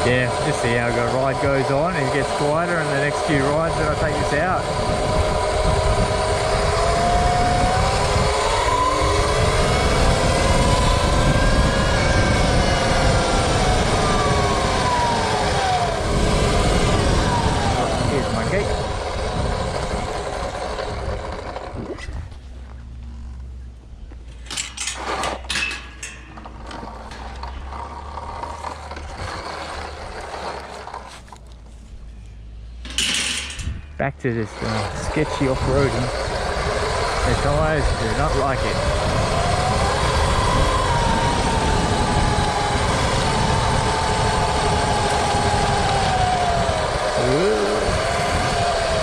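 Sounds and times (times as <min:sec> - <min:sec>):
electric motor and chain whine: 0:00.0 - 0:49.0
wind rumble: 0:00.0 - 0:49.0
knocks and clatters: 0:24.2 - 0:31.7, 0:32.8 - 0:34.0.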